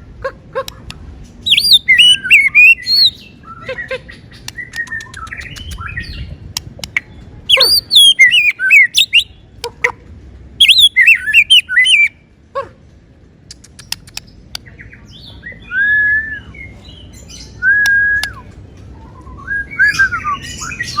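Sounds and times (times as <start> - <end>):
songbird chirping and whistling: 1.4 - 9.4, 10.6 - 12.2, 14.9 - 21.0.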